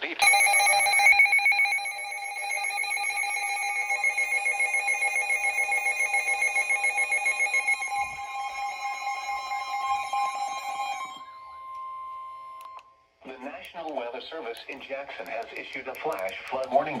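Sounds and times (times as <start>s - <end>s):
electronic warbling alert tone: 0.0s - 11.6s
lower electronic tone: 0.2s - 12.8s.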